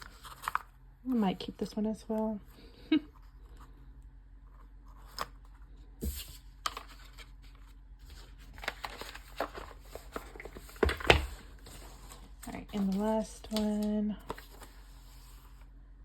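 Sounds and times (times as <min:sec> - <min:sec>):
packaging rustling: 0:04.9 - 0:15.6.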